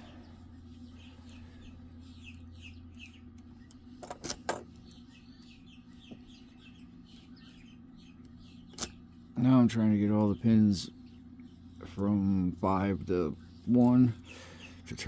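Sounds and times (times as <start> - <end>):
faint bird chirps: 0.0 - 4.0, 4.7 - 9.6
low steady hum: 0.0 - 15.0.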